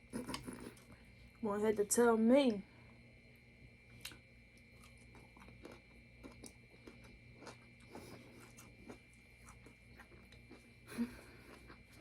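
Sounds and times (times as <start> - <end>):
faint chewing of food: 0.0 - 1.4, 3.8 - 12.0.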